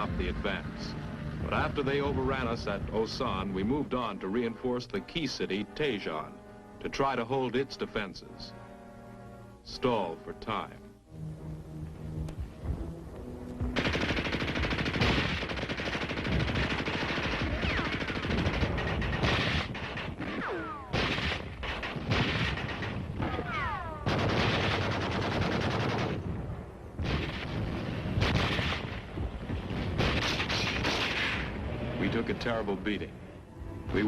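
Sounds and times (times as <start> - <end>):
gunshots: 13.6 - 32.6
machine-gun fire: 13.7 - 26.4, 27.0 - 31.6.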